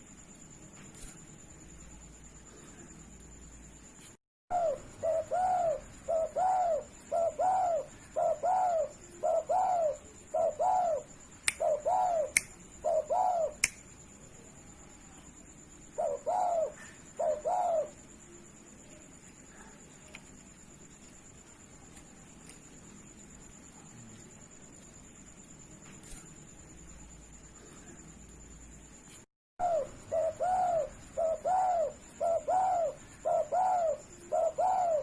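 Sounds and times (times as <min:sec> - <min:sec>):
dove cooing: 0:04.5 - 0:13.6, 0:16.0 - 0:18.0, 0:29.6 - 0:35.0
sharp clicks: 0:13.6 - 0:13.9.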